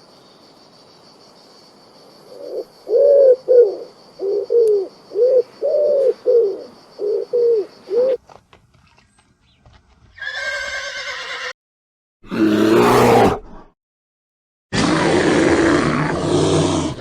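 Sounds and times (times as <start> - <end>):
pigeon cooing: 2.3 - 8.2
horse whinnying: 10.2 - 11.6, 12.2 - 13.7.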